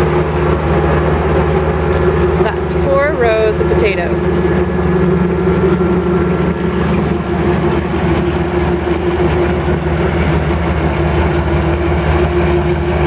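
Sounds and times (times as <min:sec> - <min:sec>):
harvester engine humming: 0:00.0 - 0:13.0.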